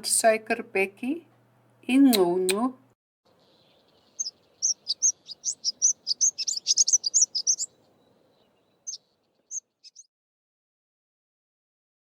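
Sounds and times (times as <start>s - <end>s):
sunbird singing: 3.3s - 10.1s.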